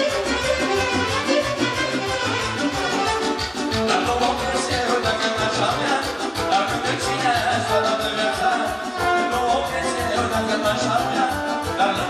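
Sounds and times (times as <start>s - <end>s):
wavering lead melody: 0.0s - 6.3s
bass and drum beat: 0.0s - 12.0s
party band instrumental: 0.0s - 12.0s.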